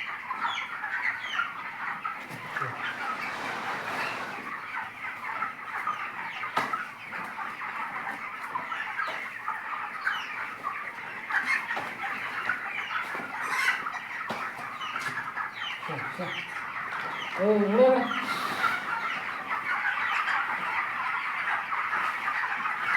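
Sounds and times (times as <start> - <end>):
chickens chirping and clucking: 0.0 - 22.9.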